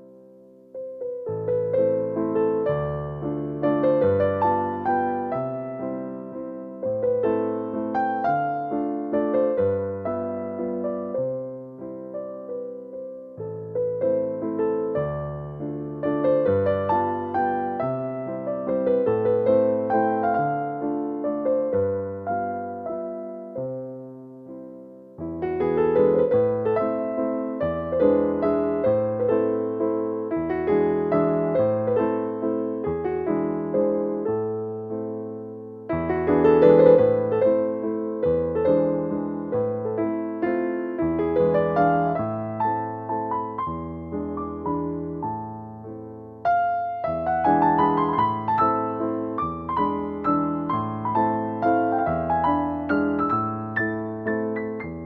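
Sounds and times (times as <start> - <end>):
piano music: 0.0 - 55.0.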